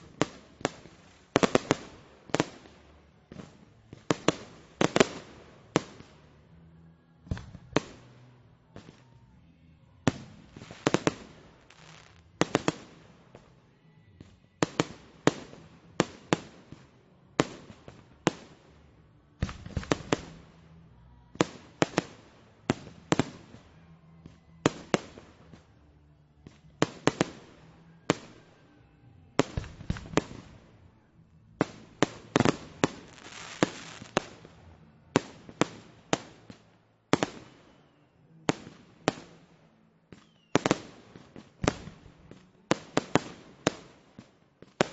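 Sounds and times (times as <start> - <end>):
fireworks bangs: 19.4 - 20.7, 29.4 - 37.8, 40.1 - 44.9.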